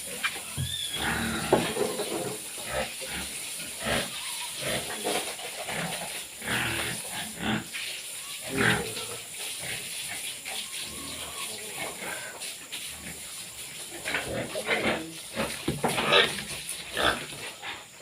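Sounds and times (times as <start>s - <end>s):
pigs grunting: 0.0s - 7.8s, 8.4s - 18.0s.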